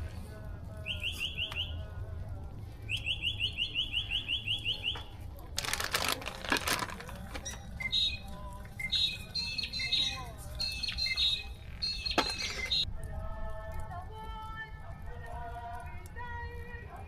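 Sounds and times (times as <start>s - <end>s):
bird singing short rising notes: 7.4s - 12.9s
soft bird chirps: 7.4s - 12.9s.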